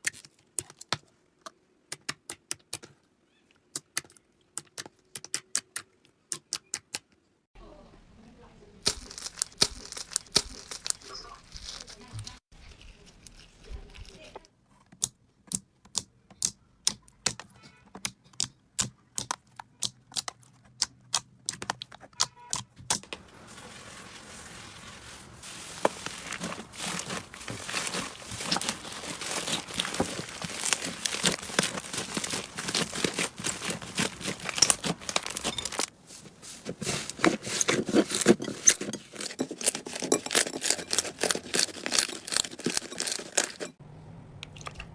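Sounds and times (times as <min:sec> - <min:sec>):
slime clicking and crackling: 0:08.8 - 0:12.4, 0:25.5 - 0:36.0.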